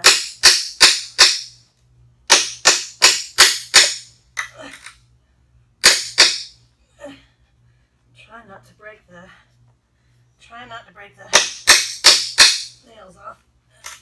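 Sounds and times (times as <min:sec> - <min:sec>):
hammer striking steel pry bar: 0:00.0 - 0:01.6, 0:02.3 - 0:04.5, 0:05.8 - 0:06.6, 0:11.3 - 0:12.7.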